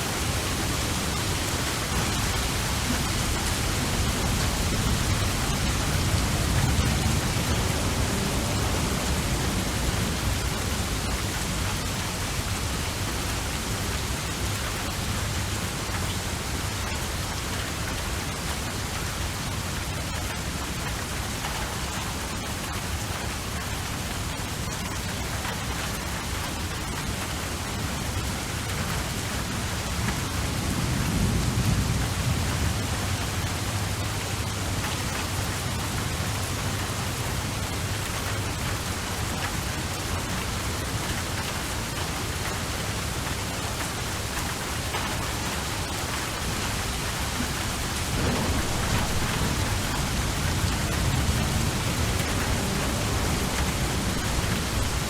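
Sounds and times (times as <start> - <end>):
steady rain hiss: 0.0 - 55.0
low rumble: 46.6 - 54.9.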